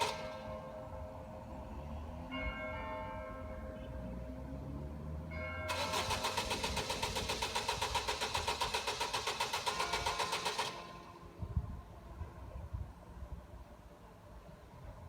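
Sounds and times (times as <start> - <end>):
car starter motor cranking: 5.7 - 11.1.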